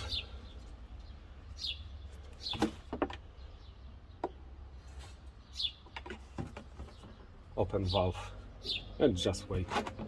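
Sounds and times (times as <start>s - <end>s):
bird chirping: 0.0s - 9.7s.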